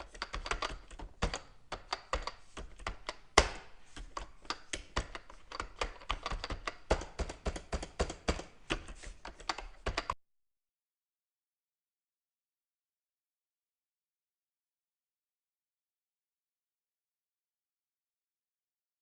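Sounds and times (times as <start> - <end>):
fast typing on computer keyboard: 0.0 - 10.2.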